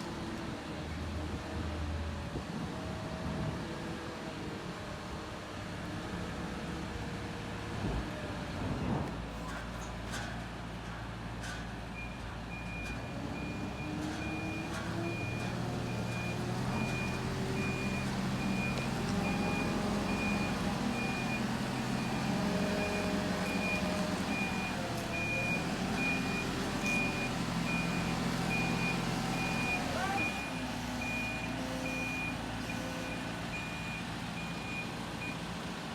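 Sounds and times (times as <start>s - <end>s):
diesel engine running: 2.2s - 35.9s
reversing alarm beeping: 12.0s - 35.4s.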